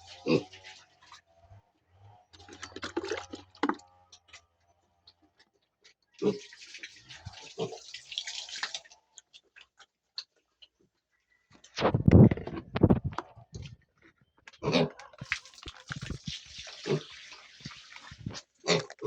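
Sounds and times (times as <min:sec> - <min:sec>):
pigs eating wet smacking: 0:02.3 - 0:04.4, 0:05.0 - 0:10.8, 0:14.7 - 0:19.0.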